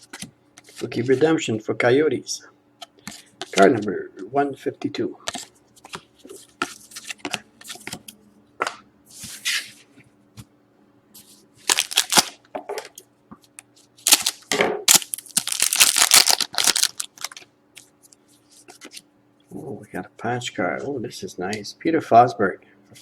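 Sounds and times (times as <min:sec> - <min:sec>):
cards being handled: 0:11.6 - 0:12.3, 0:14.0 - 0:17.9
wrapper tearing and crinkling: 0:11.6 - 0:12.4, 0:14.0 - 0:17.4.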